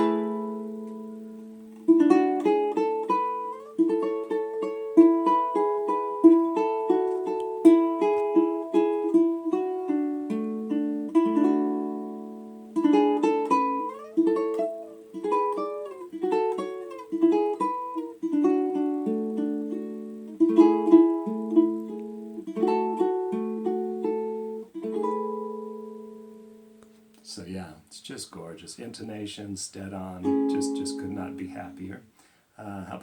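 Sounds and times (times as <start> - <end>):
fingerpicked ukulele: 0.0 - 27.3, 30.2 - 32.0.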